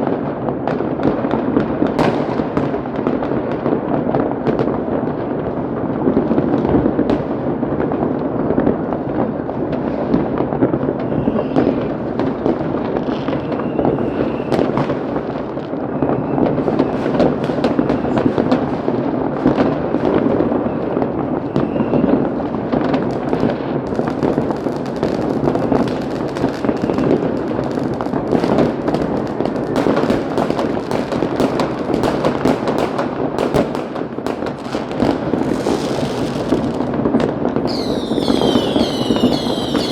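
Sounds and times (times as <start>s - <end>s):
fireworks crackling and banging: 0.0s - 39.9s
faint firework whistles: 10.8s - 12.2s, 13.0s - 18.8s, 20.0s - 23.0s, 25.6s - 27.6s, 35.4s - 39.9s.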